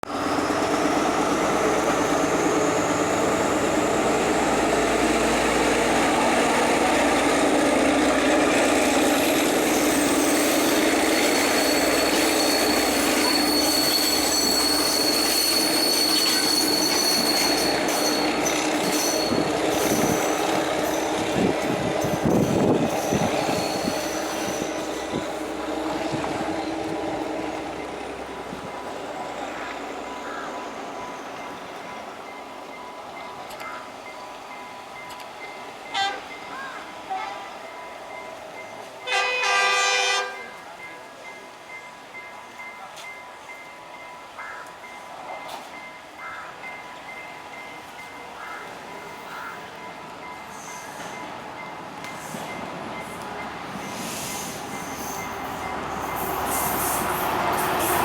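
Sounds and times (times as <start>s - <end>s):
train rumbling past: 0.0s - 58.0s
high wheel squeal: 0.1s - 5.4s, 8.8s - 28.0s, 50.3s - 51.4s, 52.1s - 58.0s.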